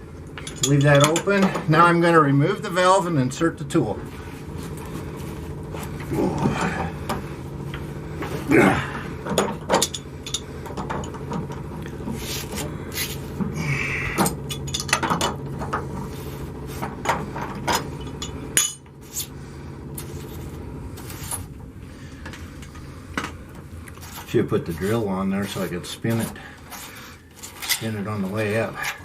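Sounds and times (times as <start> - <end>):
steady low hum: 0.0 - 29.0
metal clinks and scraping: 0.4 - 1.3, 9.4 - 11.2, 14.2 - 15.4, 26.2 - 28.0.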